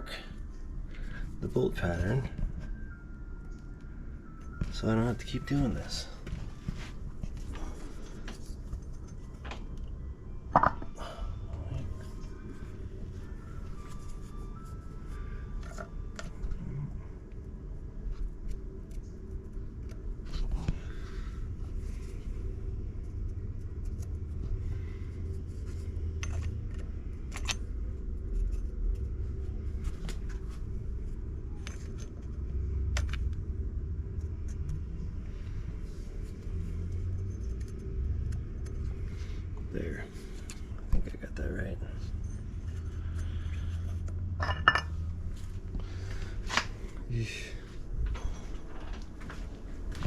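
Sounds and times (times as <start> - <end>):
steady low hum: 0.0 - 50.0
small clicks and clinks of parts: 26.2 - 27.7, 31.6 - 33.4, 36.9 - 38.9.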